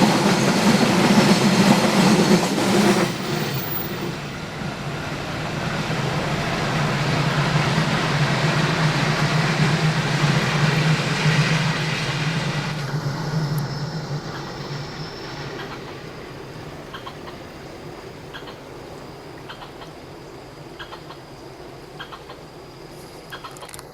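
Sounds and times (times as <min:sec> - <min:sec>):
freight train wheels clattering: 0:00.0 - 0:04.4.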